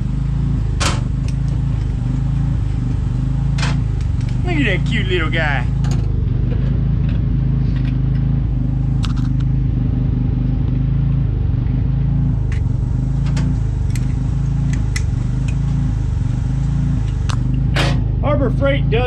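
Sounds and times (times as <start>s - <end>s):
motor droning: 0.0s - 19.0s
sharp clicks and ticks: 4.0s - 4.4s, 9.0s - 9.5s, 13.3s - 15.7s.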